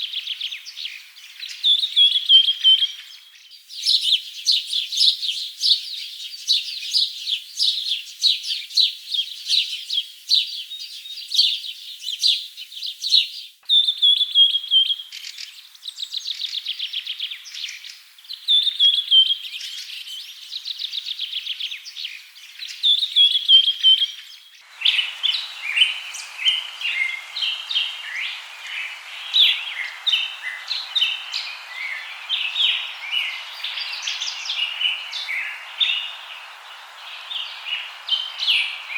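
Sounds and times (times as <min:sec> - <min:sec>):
songbirds chirping and trilling: 0:00.0 - 0:38.9
steady background hiss: 0:23.3 - 0:38.9.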